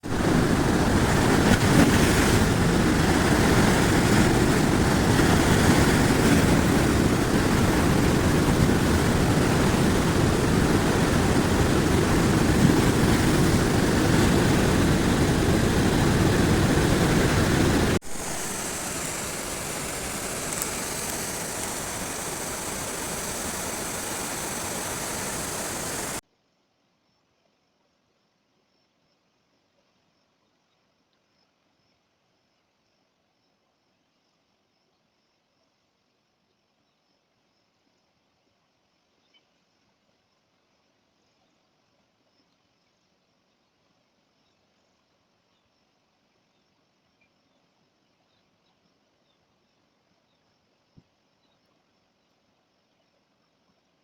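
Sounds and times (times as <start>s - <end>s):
flooded river rushing: 0.0s - 26.2s
hissy water rush: 0.0s - 26.2s.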